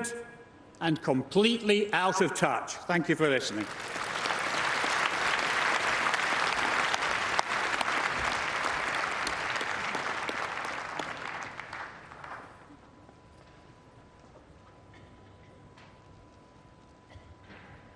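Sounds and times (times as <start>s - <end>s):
audience applauding: 3.5s - 12.7s.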